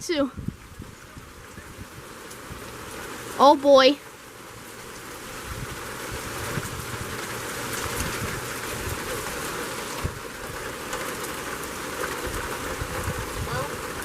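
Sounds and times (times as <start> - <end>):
wind buffeting microphone: 0.0 - 3.4, 4.5 - 14.0
heavy rain hissing: 0.0 - 14.0.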